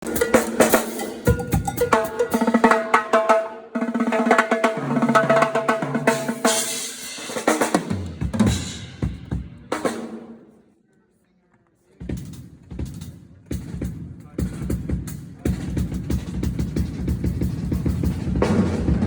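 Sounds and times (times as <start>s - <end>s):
live band playing: 0.0s - 10.4s
snare and bass drum hits: 12.0s - 19.0s.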